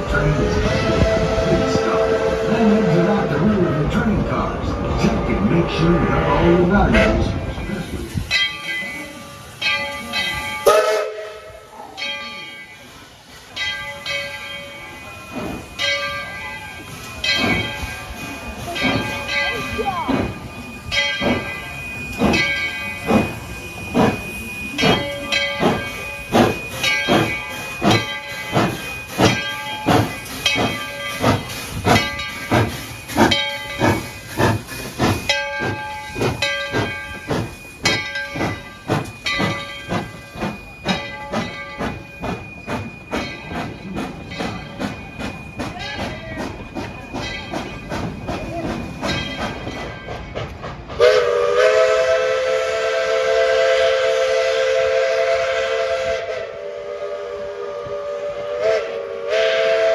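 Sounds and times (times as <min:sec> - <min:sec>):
steam whistle chord: 0:00.0 - 0:03.4, 0:10.6 - 0:11.6, 0:51.0 - 0:59.9
steam locomotive exhaust chuffs: 0:00.0 - 0:59.9.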